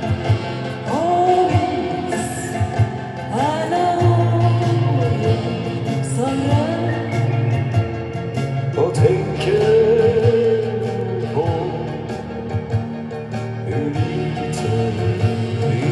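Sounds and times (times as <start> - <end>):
band playing steady beat: 0.0 - 15.9
person singing long notes: 0.8 - 7.7, 8.8 - 12.3, 13.6 - 15.9.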